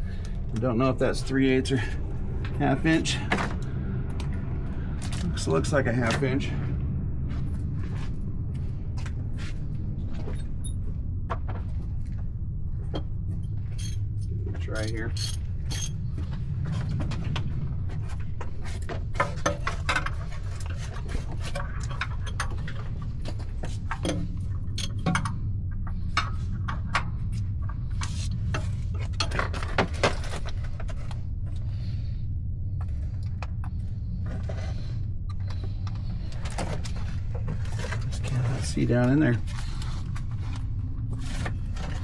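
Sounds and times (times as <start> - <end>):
steady low hum: 0.0 - 42.0
metal tools clinking on engine: 13.7 - 16.0, 24.0 - 25.4.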